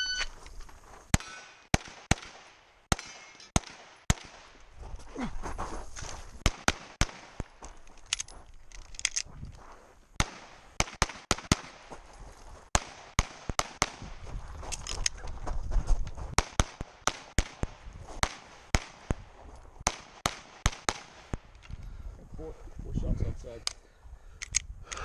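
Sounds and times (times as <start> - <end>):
shot timer beep: 0.0 - 0.3
pistol shots: 1.1 - 4.5, 6.4 - 7.5, 10.2 - 11.9, 12.7 - 14.0, 16.4 - 19.2, 19.8 - 21.4.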